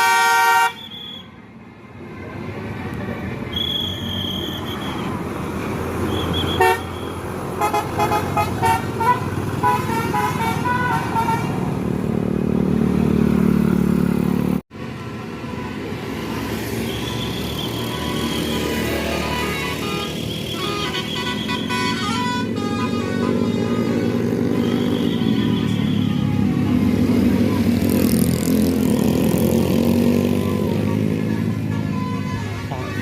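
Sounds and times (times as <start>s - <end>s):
multi-tone horn tune: 0.0s - 0.9s, 6.6s - 11.7s, 18.0s - 27.0s
bus engine: 0.0s - 33.0s.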